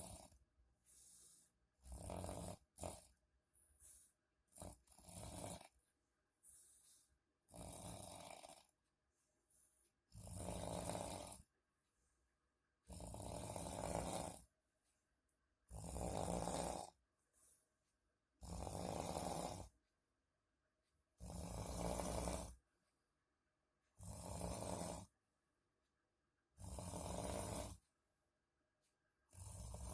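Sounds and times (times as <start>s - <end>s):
people snoring: 1.8s - 3.1s, 4.5s - 5.8s, 7.5s - 8.7s, 10.1s - 11.5s, 12.9s - 14.5s, 15.7s - 17.0s, 18.4s - 19.8s, 21.2s - 22.6s, 24.0s - 25.1s, 26.6s - 27.8s, 29.3s - 29.9s.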